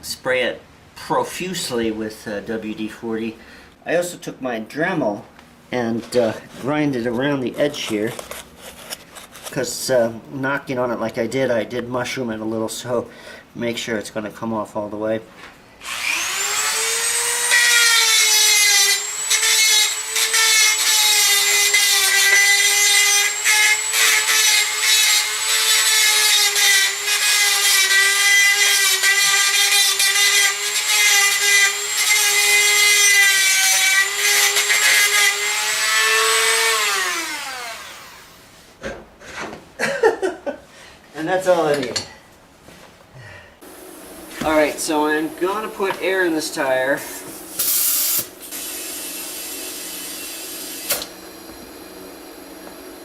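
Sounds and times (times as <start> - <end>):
rotary tool whining: 15.8 - 28.3
rotary tool grinding metal: 15.8 - 38.3.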